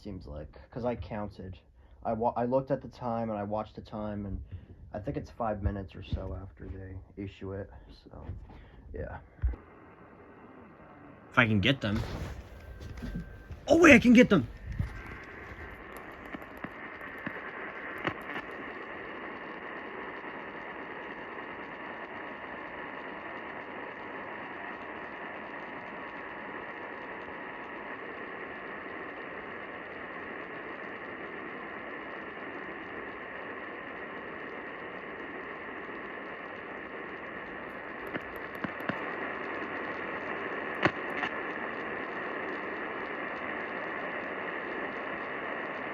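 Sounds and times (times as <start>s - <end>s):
radio static hiss: 0.0s - 45.9s
faint steady whistle: 9.6s - 22.7s
click: 14.5s - 18.6s, 37.7s - 39.1s, 40.7s - 41.4s.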